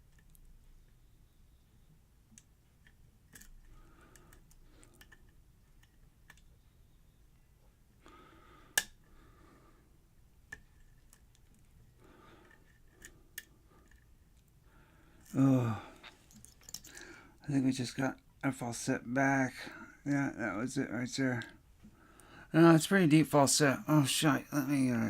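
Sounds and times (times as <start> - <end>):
lock pick scraping and clicking: 2.8 - 6.5, 16.0 - 17.0.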